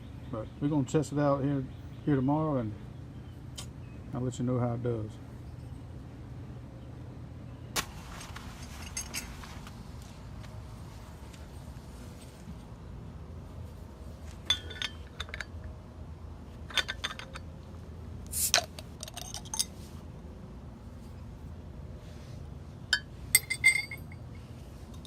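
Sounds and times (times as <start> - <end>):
small metal pieces clinking: 18.5 - 19.7.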